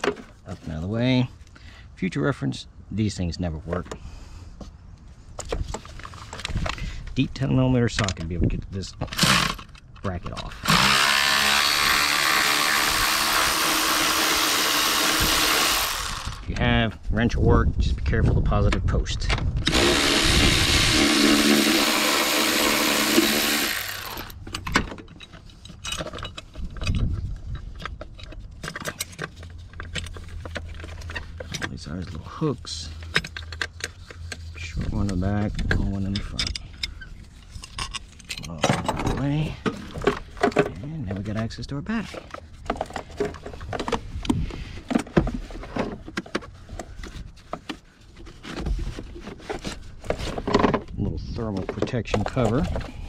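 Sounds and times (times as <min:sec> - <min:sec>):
parts clicking and rattling: 0:05.4 - 0:16.7, 0:18.7 - 0:53.0
cordless power tool whirring: 0:09.2 - 0:09.7, 0:10.5 - 0:16.4, 0:19.6 - 0:24.4.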